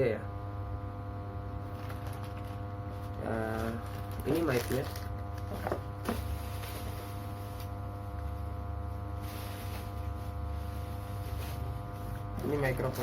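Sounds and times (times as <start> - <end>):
packaging rustle: 1.6 - 7.7.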